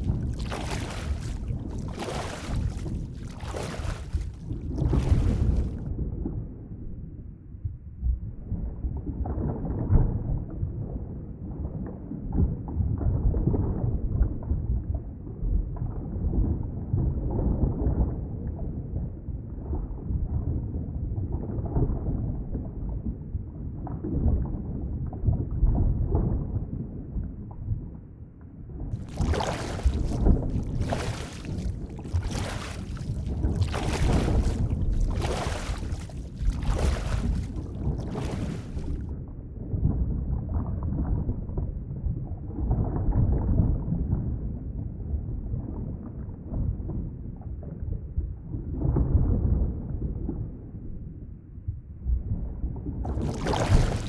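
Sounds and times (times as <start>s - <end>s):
underwater water rumble: 0.0s - 5.9s, 29.0s - 39.1s, 53.1s - 54.0s.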